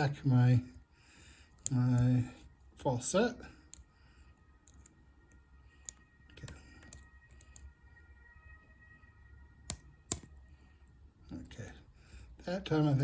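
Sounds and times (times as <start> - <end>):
lock pick clicking and scraping: 1.5 - 2.1, 3.7 - 3.9, 4.6 - 5.0, 5.8 - 7.7, 9.7 - 10.4.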